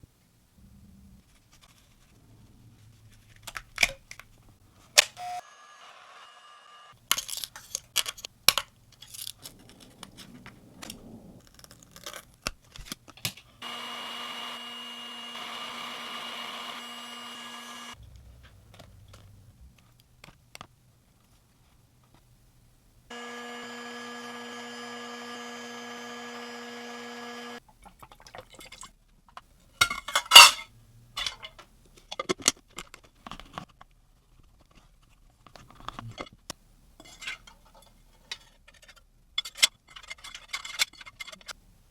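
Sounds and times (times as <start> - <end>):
small bench machine humming: 5.1 - 7.0, 13.6 - 18.0, 23.1 - 27.6.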